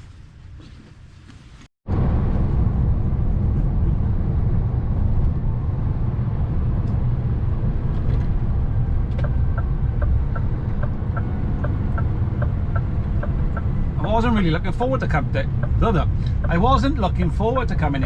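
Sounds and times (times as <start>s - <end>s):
engine and road rumble: 0.0s - 18.0s
light even ticking: 9.1s - 14.2s, 15.4s - 16.8s.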